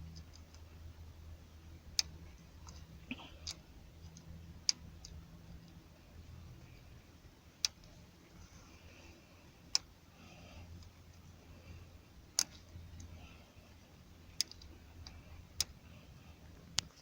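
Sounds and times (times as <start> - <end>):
faint low hum: 0.0 - 17.0
sharp metal clicks: 12.3 - 13.1, 14.3 - 15.8.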